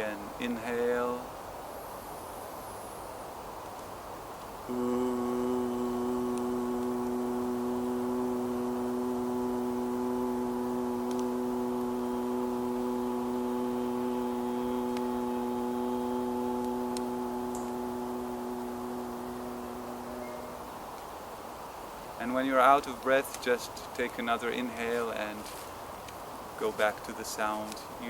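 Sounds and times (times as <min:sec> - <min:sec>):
man holding a long ooh tone: 0:04.7 - 0:21.0.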